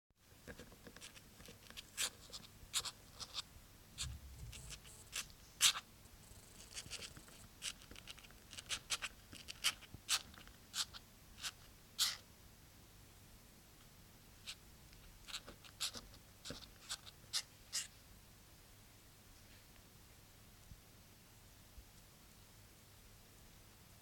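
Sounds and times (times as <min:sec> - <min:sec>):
kitten claws scratching: 0:00.4 - 0:03.4, 0:04.0 - 0:12.2, 0:14.5 - 0:17.9.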